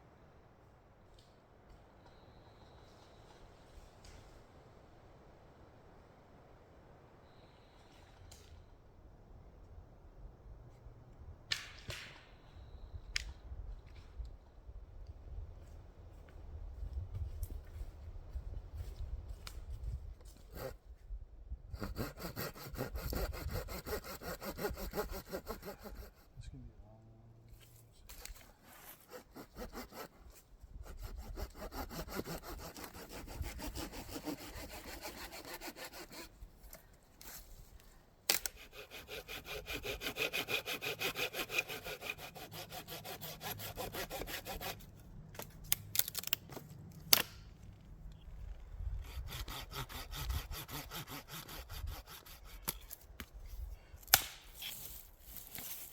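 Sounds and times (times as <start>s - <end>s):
saw cutting through wood: 20.5s - 20.8s, 21.8s - 26.3s, 28.2s - 36.4s, 38.3s - 44.9s, 49.0s - 52.8s.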